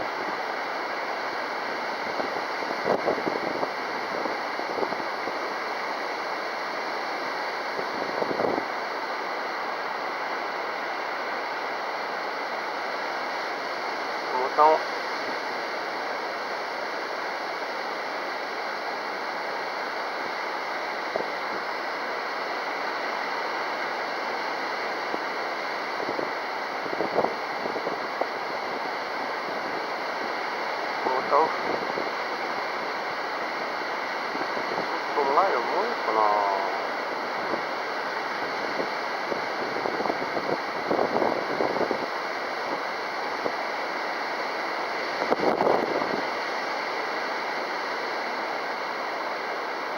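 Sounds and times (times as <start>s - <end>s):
wind rushing over microphone: 2.0s - 5.5s, 7.8s - 8.7s, 26.0s - 29.0s, 31.1s - 32.2s, 38.3s - 42.8s, 45.2s - 46.3s.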